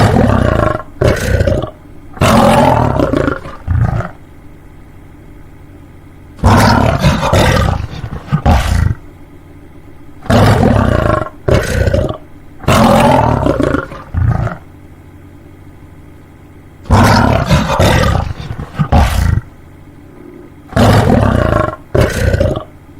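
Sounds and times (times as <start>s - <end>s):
lion roaring: 0.0s - 4.2s, 6.4s - 9.0s, 10.2s - 14.7s, 16.9s - 19.5s, 20.1s - 22.7s.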